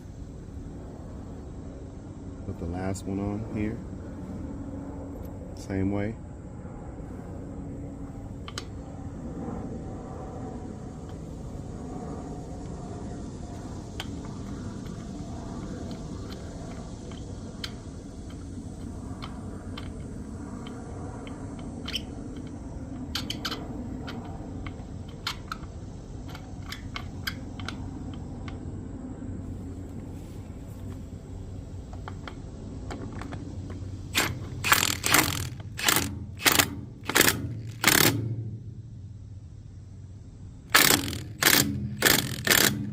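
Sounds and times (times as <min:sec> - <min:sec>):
metal clicks of nuts and bolts: 0:19.2 - 0:28.6, 0:34.1 - 0:38.3, 0:40.7 - 0:42.9
impact wrench bursts: 0:34.1 - 0:38.5, 0:40.7 - 0:42.9.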